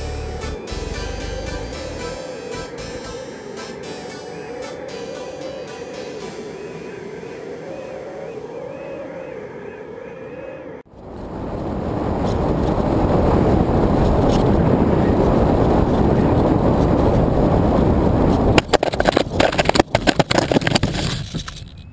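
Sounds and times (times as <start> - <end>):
wind rushing over camera: 2.1 - 21.9
model plane knocking and scraping: 18.3 - 21.8.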